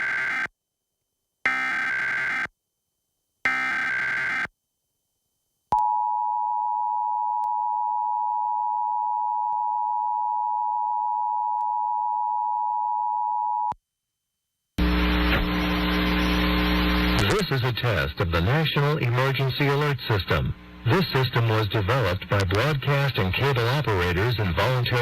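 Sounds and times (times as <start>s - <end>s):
loud hum and hiss: 14.8s - 25.0s.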